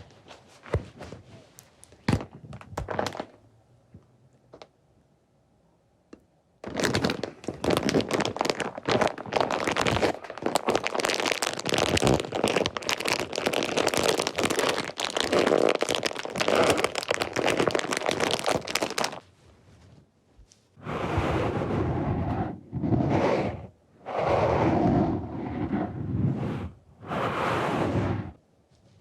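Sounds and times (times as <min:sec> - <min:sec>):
close crinkling and crackling: 0:00.0 - 0:03.4, 0:06.6 - 0:20.8.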